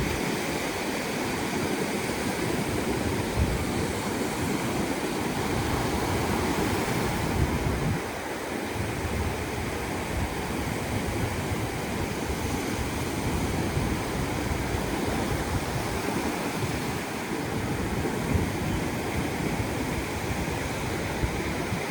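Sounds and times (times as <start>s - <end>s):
surf washing onto beach: 0.0s - 21.9s
wind rumble on microphone: 0.0s - 21.9s.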